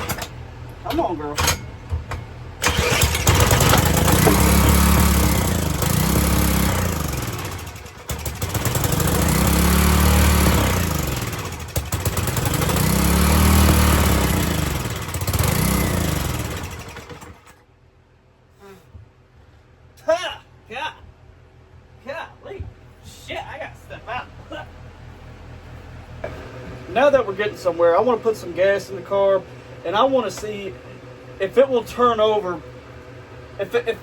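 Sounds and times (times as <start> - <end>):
small engine surging: 2.6 - 17.5.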